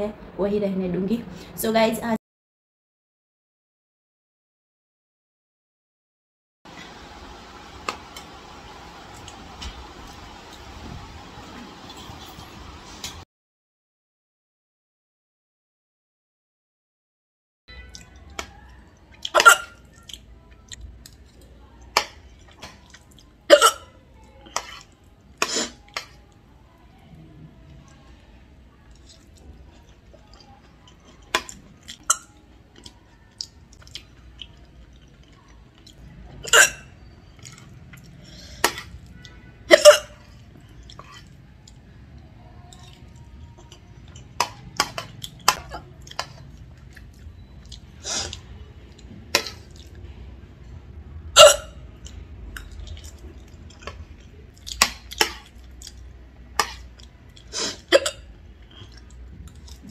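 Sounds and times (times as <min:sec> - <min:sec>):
woman hiccuping: 0:19.3 - 0:19.8, 0:23.5 - 0:23.9, 0:36.4 - 0:36.8, 0:39.7 - 0:40.2, 0:51.4 - 0:51.8.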